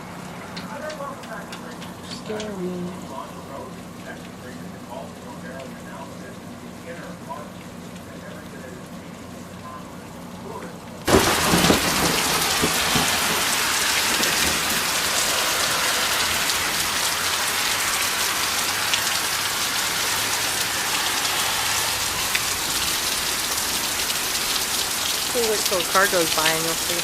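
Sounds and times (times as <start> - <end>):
heavy rain pouring: 0.0 - 27.0.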